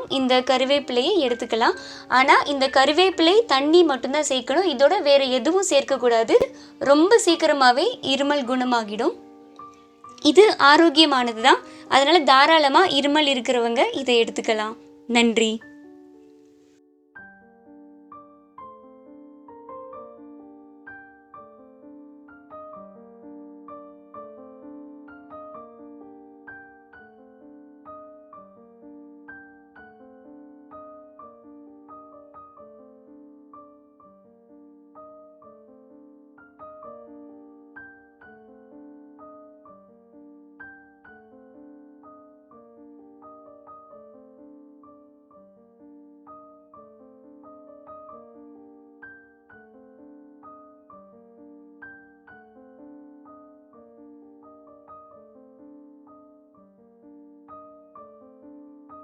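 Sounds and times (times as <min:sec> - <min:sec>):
soft piano music: 0:00.0 - 0:59.0.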